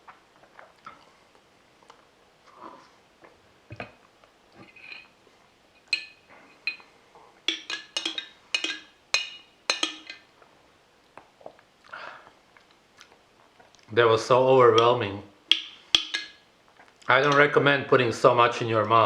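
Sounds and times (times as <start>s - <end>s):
clinks and taps on glass: 5.9s - 6.8s, 7.5s - 10.2s, 14.8s - 16.4s.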